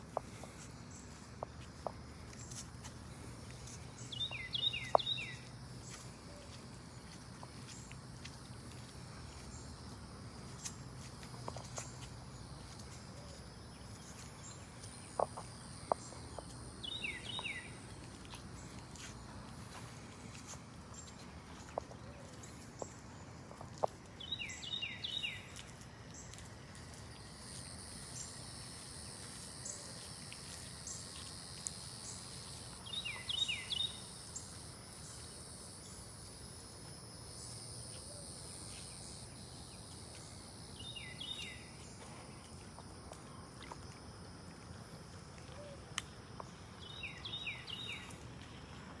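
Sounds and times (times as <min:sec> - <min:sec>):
insects buzzing: 0:00.0 - 0:49.0.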